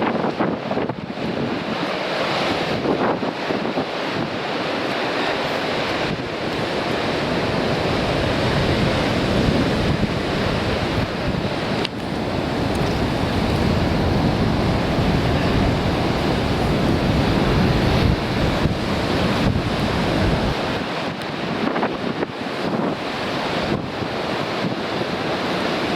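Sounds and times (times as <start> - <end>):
wind buffeting microphone: 0.0 - 4.6, 5.2 - 25.4
waves breaking on rocks: 0.0 - 25.9.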